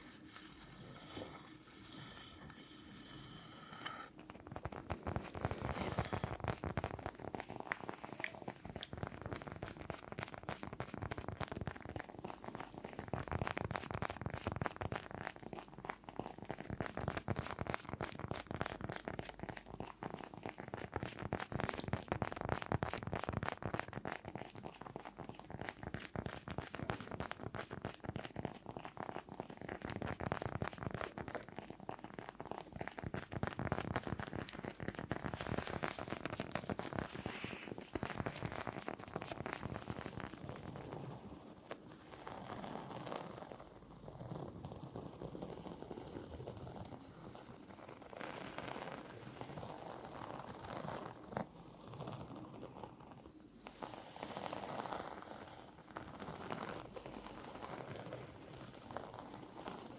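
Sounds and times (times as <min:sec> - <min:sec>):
rapid tapping and scratching: 0:03.8 - 0:46.9.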